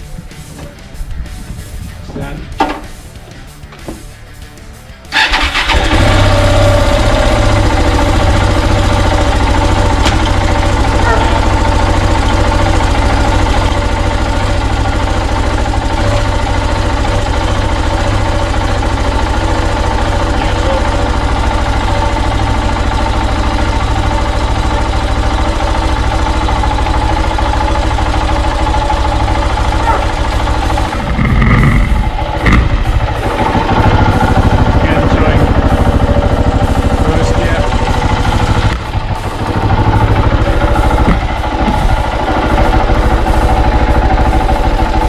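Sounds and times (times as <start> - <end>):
motorcycle engine idling: 0.0 - 45.0
engine starter cranking: 5.1 - 17.2, 25.8 - 44.8.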